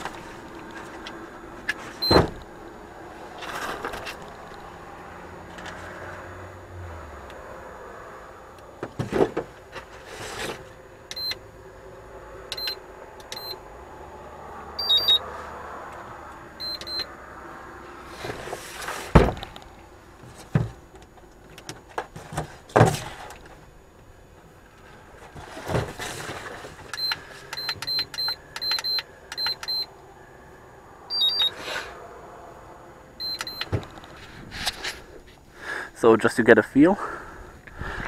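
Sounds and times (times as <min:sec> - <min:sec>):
short high electronic beeps: 0:14.8 - 0:15.2, 0:31.1 - 0:31.5.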